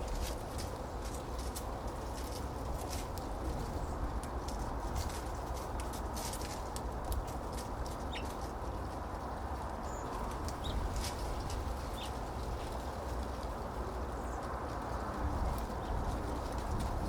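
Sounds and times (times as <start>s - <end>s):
low background noise: 0.0s - 17.0s
birds chirping: 7.2s - 12.9s.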